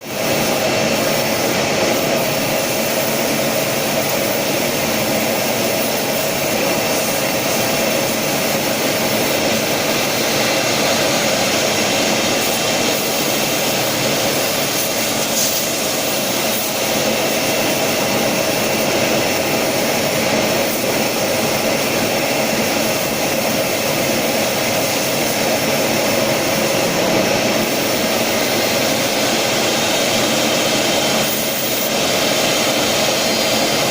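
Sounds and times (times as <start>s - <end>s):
cnc router machine noise: 0.0s - 33.9s
spindle whine: 0.1s - 33.9s.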